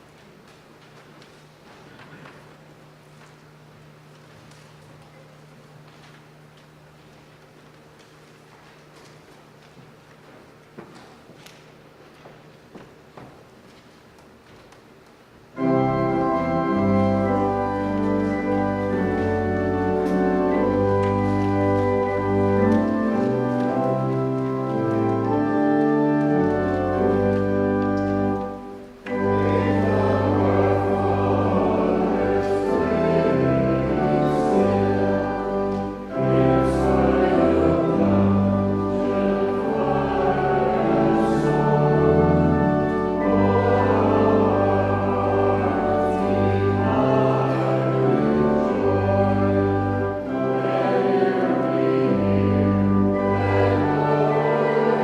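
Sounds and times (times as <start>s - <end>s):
church organ playing hymn: 15.4s - 55.0s
choir singing: 15.6s - 55.0s.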